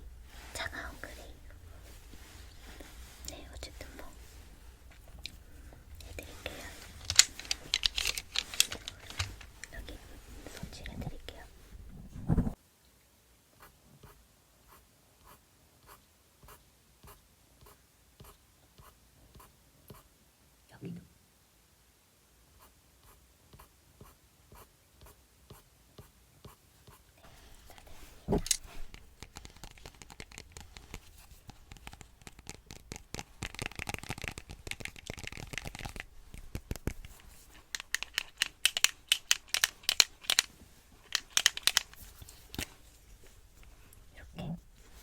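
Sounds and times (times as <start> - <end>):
scratchy rubbing: 0.0 - 12.6, 27.2 - 45.0
sharp crackling clicks: 28.4 - 42.7.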